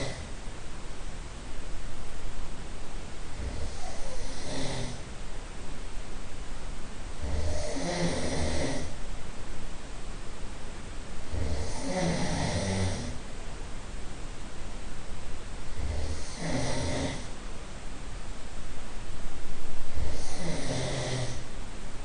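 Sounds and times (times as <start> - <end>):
man snoring: 0.0 - 0.3, 3.3 - 5.1, 7.2 - 9.0, 11.3 - 13.2, 15.7 - 17.4, 19.9 - 21.5
steady hiss: 0.0 - 22.0.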